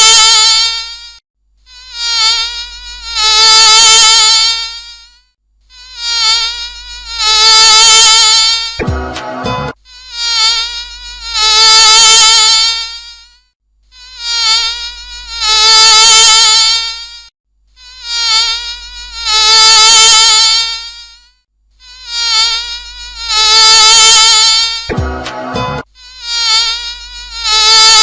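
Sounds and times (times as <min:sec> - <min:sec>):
bee wing buzz flying past: 0:26.1 - 0:28.0.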